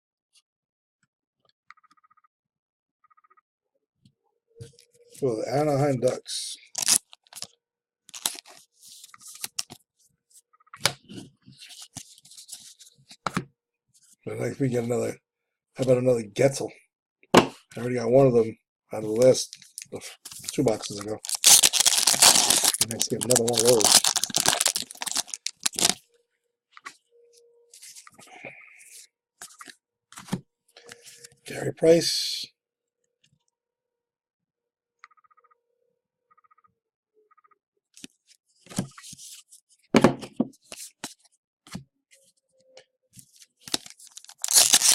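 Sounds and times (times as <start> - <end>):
foil wrapper crinkling: 6.7 - 7.5, 8.1 - 8.6, 19.5 - 26.0, 43.7 - 44.9
trading cards sliding: 19.5 - 26.0, 43.7 - 44.9.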